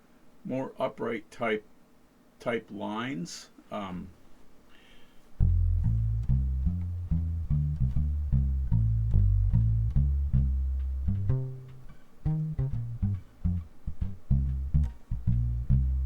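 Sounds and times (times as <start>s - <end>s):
fretless bass guitar plucked notes: 5.4s - 16.0s.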